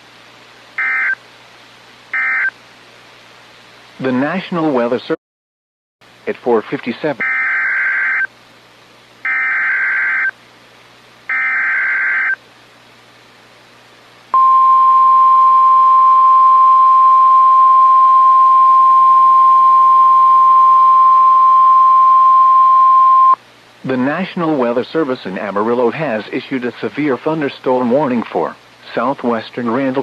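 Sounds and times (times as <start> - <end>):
screechy data bursts: 0.8 - 1.2, 2.1 - 2.5, 7.2 - 8.3, 9.3 - 10.3, 11.3 - 12.4
steady warning alarm tone: 0.8 - 1.2, 2.2 - 2.5, 7.2 - 8.3, 9.3 - 10.3, 11.3 - 12.4.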